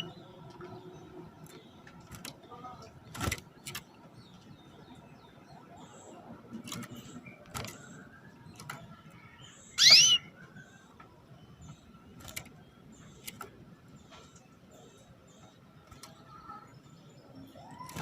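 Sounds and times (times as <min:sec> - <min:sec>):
canary rising call: 0:09.8 - 0:10.3.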